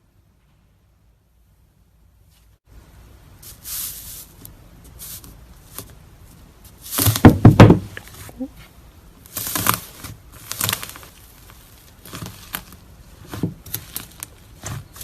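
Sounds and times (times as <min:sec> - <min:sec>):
slime squishing: 0:09.2 - 0:15.0.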